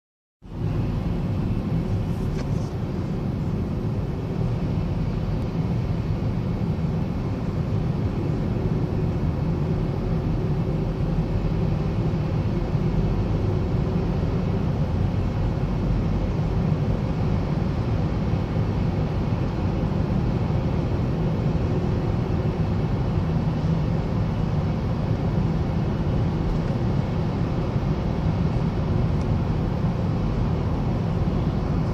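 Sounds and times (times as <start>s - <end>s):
traffic rumbling in a tunnel: 0.4s - 31.9s.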